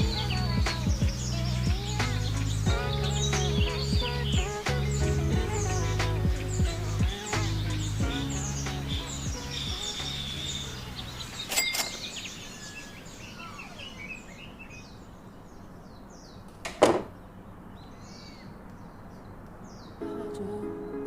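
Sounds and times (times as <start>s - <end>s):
small birds chirping: 0.0s - 20.1s
loud thump: 16.7s - 17.1s.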